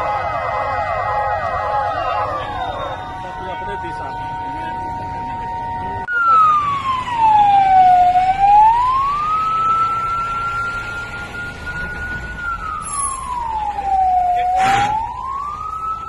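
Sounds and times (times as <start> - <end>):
siren wailing slowly: 0.0 - 16.0.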